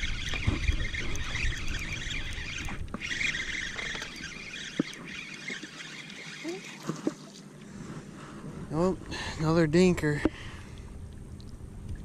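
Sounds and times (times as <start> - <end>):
fishing reel whirring: 0.0 - 7.6.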